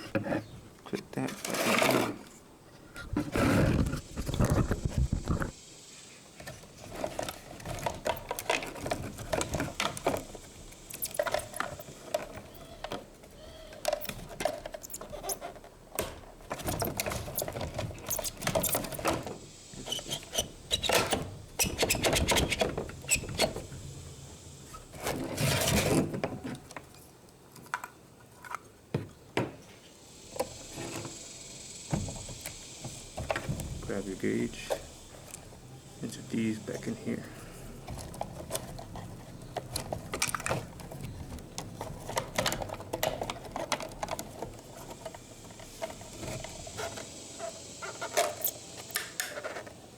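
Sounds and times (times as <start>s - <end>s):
scraping rustle: 0.0s - 28.8s, 30.3s - 49.9s
plastic parts clicking: 6.4s - 23.6s, 37.8s - 47.1s.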